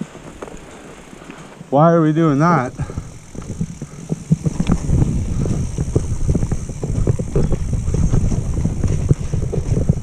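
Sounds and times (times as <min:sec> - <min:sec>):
bike tyres rumbling on mud: 0:00.0 - 0:10.0
bike knocks and rattles: 0:02.3 - 0:10.0.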